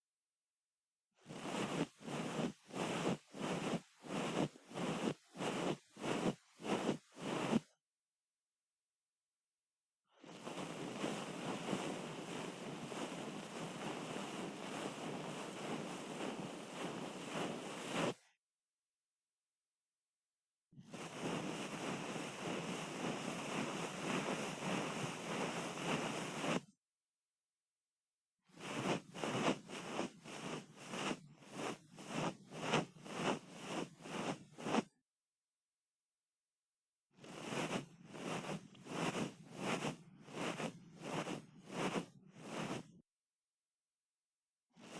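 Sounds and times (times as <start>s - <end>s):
scraping and rubbing on microphone: 1.2s - 7.7s, 10.3s - 18.2s, 20.8s - 26.7s, 28.5s - 35.0s, 37.2s - 43.0s
tool scratching microphone: 28.8s - 34.9s, 37.4s - 42.9s.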